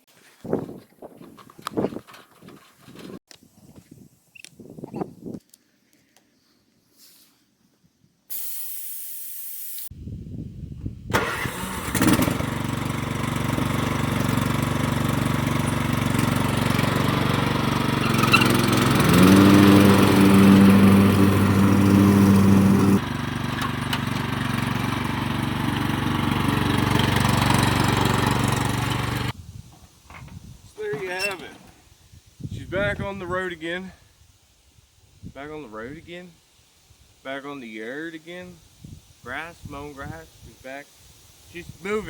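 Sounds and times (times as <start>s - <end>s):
lawn tractor engine running: 11.1s - 29.4s, 30.8s - 31.8s.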